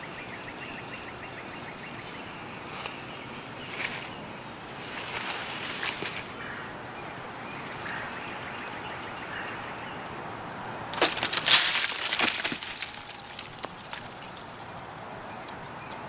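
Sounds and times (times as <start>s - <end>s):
steady outdoor hiss: 0.0s - 16.0s
sharp crackling and rustling: 2.6s - 6.4s, 10.8s - 16.0s.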